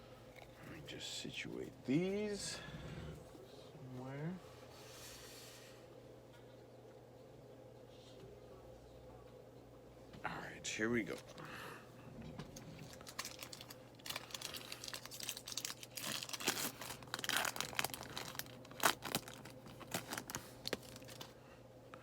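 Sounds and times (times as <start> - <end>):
card pack wrapper tearing and crinkling: 12.8 - 21.3.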